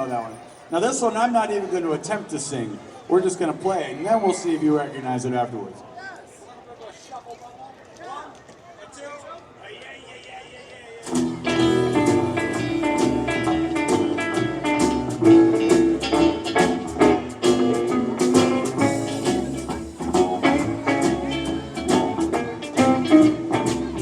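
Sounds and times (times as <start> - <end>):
acoustic string band playing: 11.1 - 24.0.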